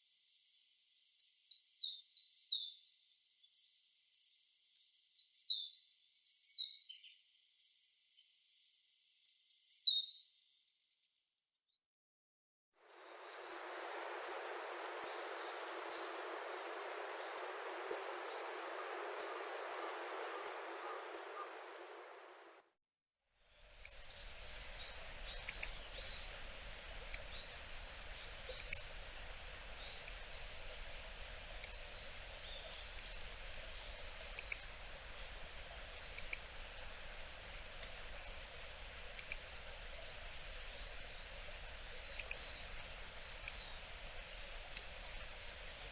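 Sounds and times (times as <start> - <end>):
bird high-pitched call notes: 12.9 - 22.4.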